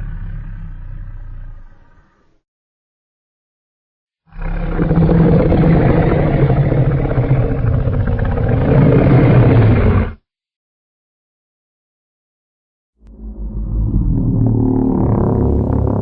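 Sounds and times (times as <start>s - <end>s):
low monster roar: 0.0s - 2.2s, 4.3s - 10.2s.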